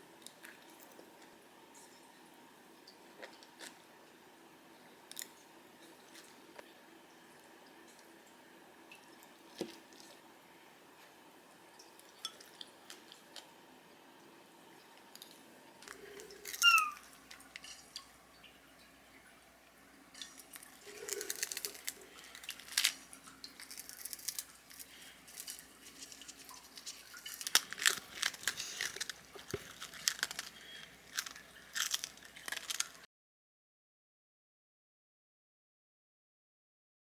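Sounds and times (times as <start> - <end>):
short high squeak: 16.6 - 17.0
crunchy food chewing: 20.2 - 33.1.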